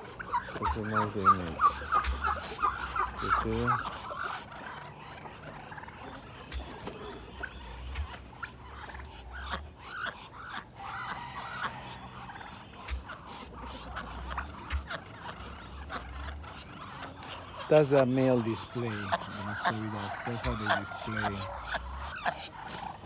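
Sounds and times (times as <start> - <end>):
fowl calling: 0.0 - 23.0.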